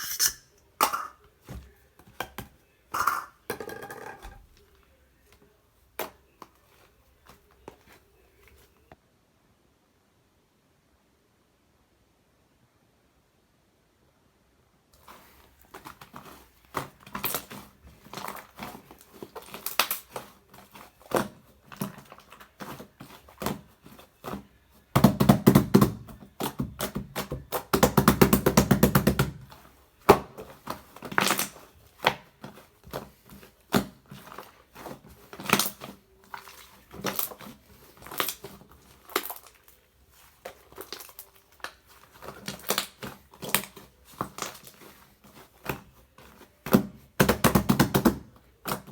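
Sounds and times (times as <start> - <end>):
slime squished by hand: 15.0 - 24.4, 25.0 - 48.9.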